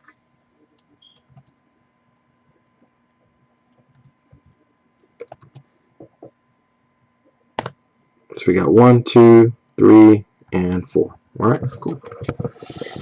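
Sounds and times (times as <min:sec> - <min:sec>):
typing on computer keyboard: 0:05.2 - 0:05.6.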